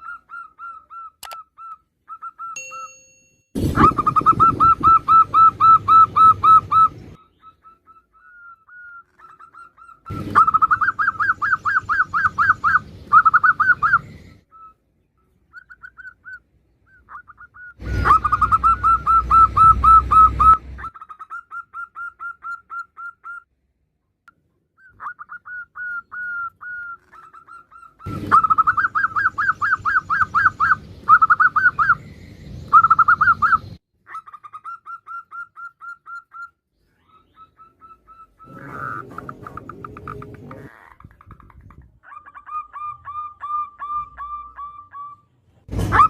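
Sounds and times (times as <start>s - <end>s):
dove calling in staccato notes: 9.2s - 14.0s, 24.9s - 32.0s.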